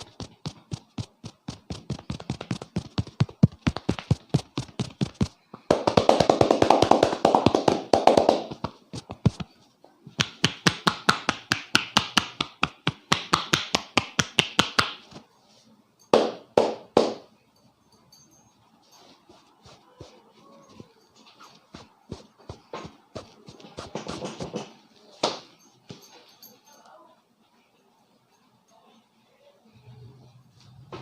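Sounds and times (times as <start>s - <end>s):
hands tapping on a head: 0.0s - 9.5s, 10.2s - 15.2s
heavy slaps: 10.2s - 15.0s.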